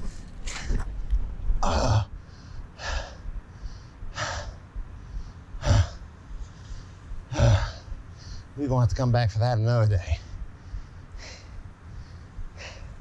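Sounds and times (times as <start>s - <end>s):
man breathing hard: 1.6s - 8.6s, 10.1s - 13.0s.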